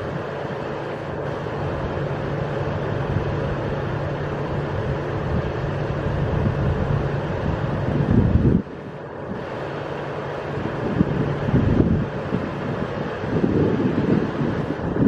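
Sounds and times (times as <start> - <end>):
train running through station: 0.0 - 15.0.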